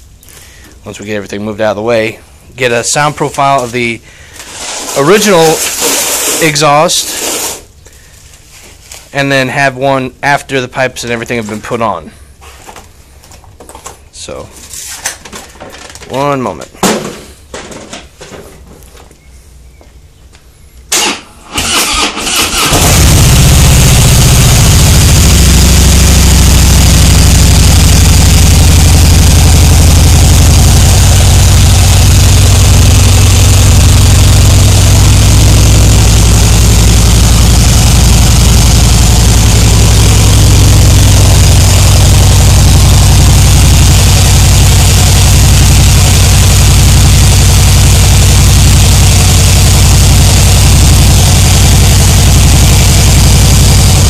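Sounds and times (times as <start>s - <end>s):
starter cranking motorcycle engine: 20.9s - 54.0s
motorcycle engine idling loudly: 22.6s - 54.0s.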